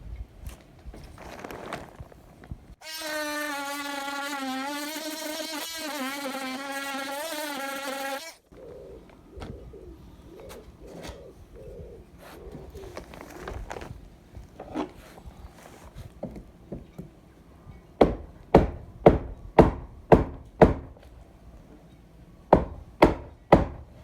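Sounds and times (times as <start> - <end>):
scraping: 1.0 - 3.0, 12.2 - 16.2
oscillating multi-tool buzzing: 2.8 - 8.4.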